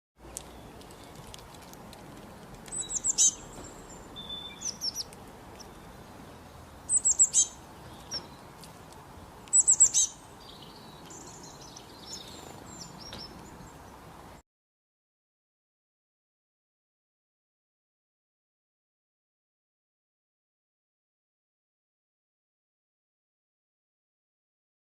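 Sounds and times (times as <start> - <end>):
small birds chirping: 0.2 - 14.4.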